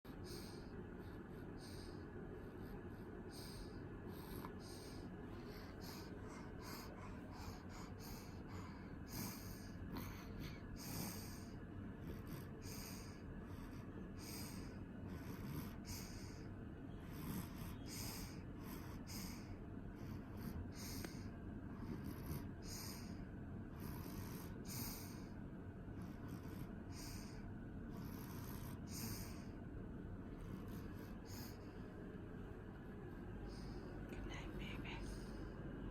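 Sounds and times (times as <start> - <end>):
low background hiss: 28.8 - 35.9.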